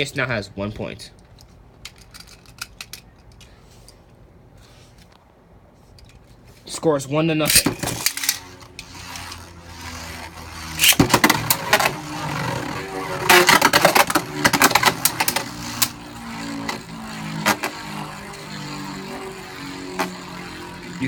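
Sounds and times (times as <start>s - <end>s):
spinning top scraping: 7.4s - 21.0s
spinning tops whirring: 7.4s - 21.0s
tops clashing with sharp clacks: 7.4s - 21.0s.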